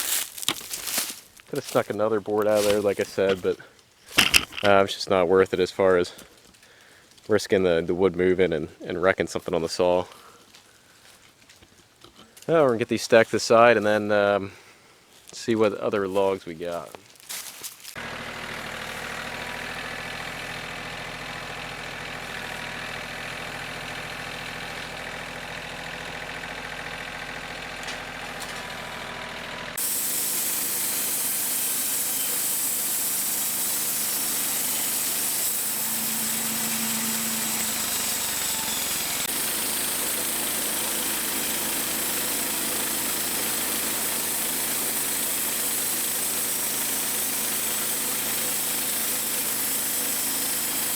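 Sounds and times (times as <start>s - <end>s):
engine running: 0.0s - 4.8s, 17.9s - 50.9s.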